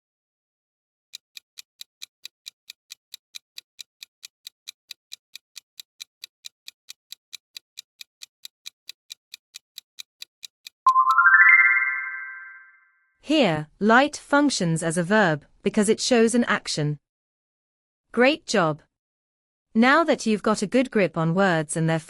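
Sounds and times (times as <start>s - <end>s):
clock-like ticking: 1.1s - 10.9s.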